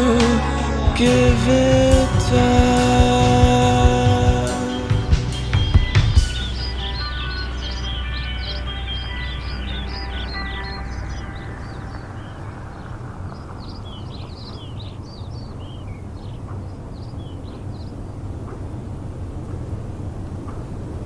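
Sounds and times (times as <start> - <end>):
piano and vocal song: 0.0 - 5.5
low outdoor rumble: 0.0 - 14.8
small birds chirping: 0.0 - 19.1.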